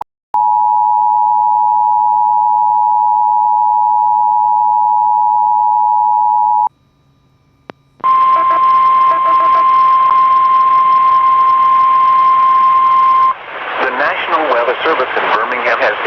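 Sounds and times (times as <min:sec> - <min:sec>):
two-tone alarm: 0:08.0 - 0:13.4.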